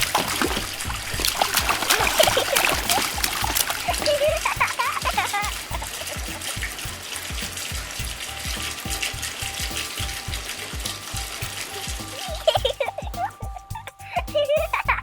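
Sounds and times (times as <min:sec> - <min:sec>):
background music with beat: 0:00.0 - 0:15.0
tap water running onto hands: 0:00.0 - 0:15.0.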